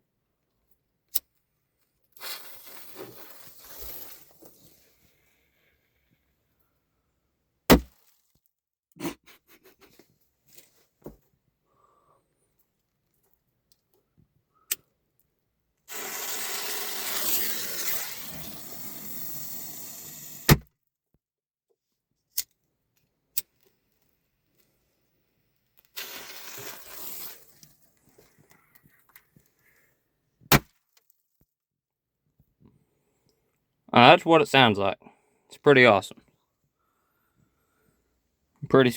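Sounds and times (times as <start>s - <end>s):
firework hissing: 15.9s - 20.6s, 26.0s - 27.6s.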